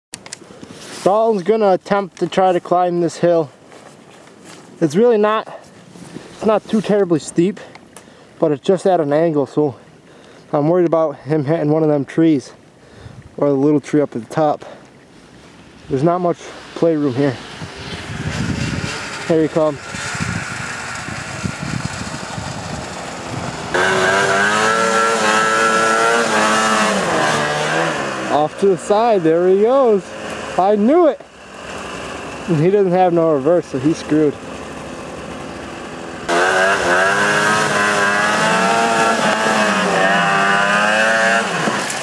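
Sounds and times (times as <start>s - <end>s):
snowmobile engine revving: 15.9s - 42.0s.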